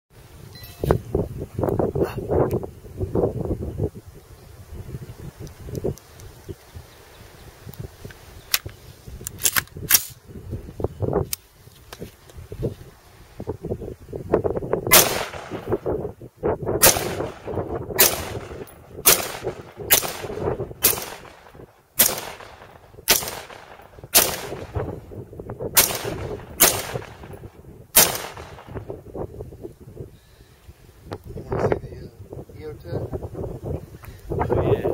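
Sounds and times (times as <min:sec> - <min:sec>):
rifle shots with echo: 0:14.9 - 0:15.9, 0:16.8 - 0:25.0, 0:25.8 - 0:27.4, 0:28.0 - 0:28.9.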